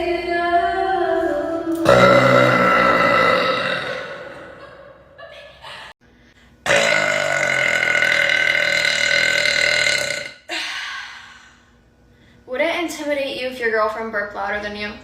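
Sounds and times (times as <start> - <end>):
woman belching loudly: 1.8 - 4.6, 6.7 - 10.4.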